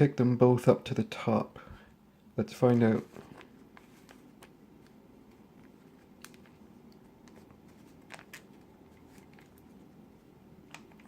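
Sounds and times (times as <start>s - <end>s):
room noise: 0.0s - 11.0s.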